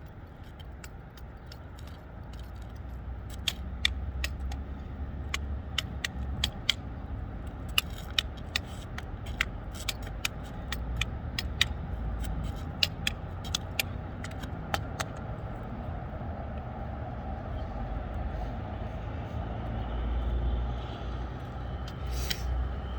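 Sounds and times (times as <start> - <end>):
juggling sticks clicking: 0.0 - 15.7.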